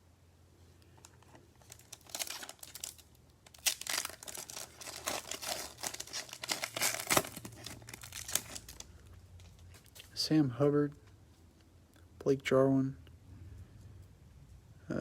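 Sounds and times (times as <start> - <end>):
foil wrapper tearing and crinkling: 1.6 - 10.1.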